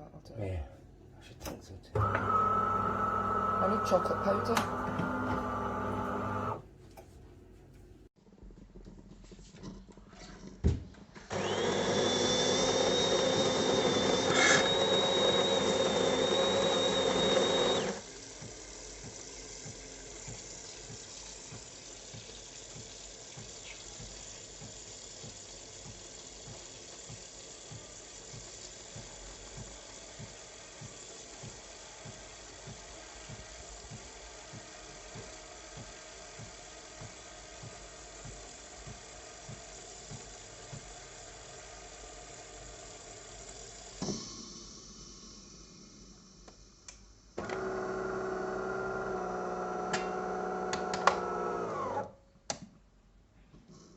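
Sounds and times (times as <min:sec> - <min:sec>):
coffee grinder whirring: 0:02.0 - 0:06.6, 0:11.2 - 0:44.1, 0:47.4 - 0:52.1
coffee machine humming and pulsing: 0:02.0 - 0:06.6, 0:11.3 - 0:44.1, 0:47.4 - 0:52.0.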